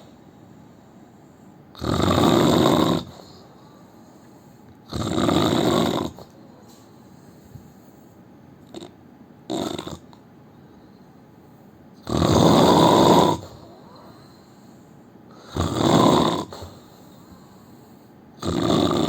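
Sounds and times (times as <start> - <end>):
quiet breaths: 0.0 - 1.8, 2.6 - 5.0, 5.7 - 9.0, 10.0 - 12.0, 13.1 - 15.7, 16.4 - 19.0
man snoring: 1.8 - 3.4, 4.9 - 6.3, 9.5 - 10.1, 12.0 - 13.8, 15.3 - 16.8, 18.4 - 19.0.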